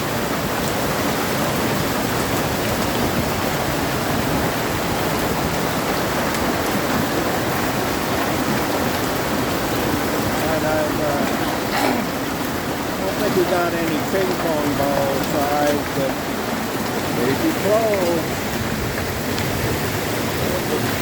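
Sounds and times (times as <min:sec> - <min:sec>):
hailstones ticking: 0:00.0 - 0:21.0
heavy rain hissing: 0:00.0 - 0:21.0.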